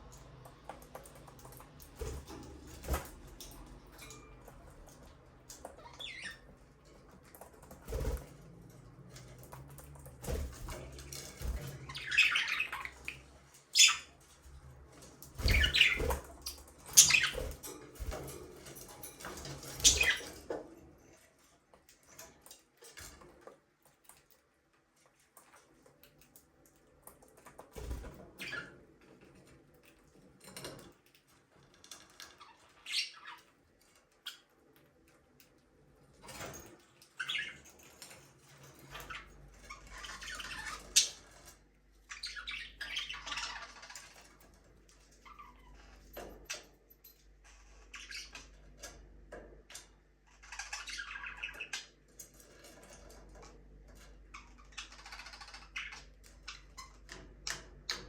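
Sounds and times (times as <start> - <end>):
budgerigars chirping: 11.8 - 14.1, 15.4 - 16.2, 17.0 - 17.4.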